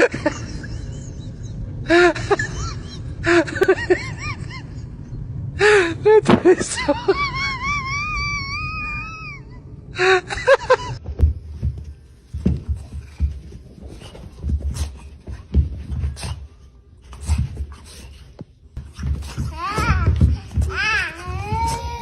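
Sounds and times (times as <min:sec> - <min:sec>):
low thumps and scuffling: 0:11.0 - 0:22.0.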